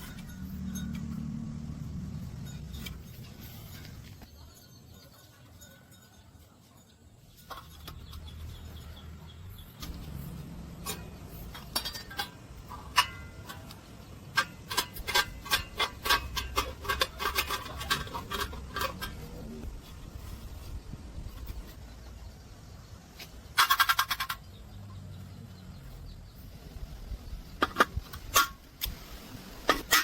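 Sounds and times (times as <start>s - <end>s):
low hum: 0.0s - 4.5s.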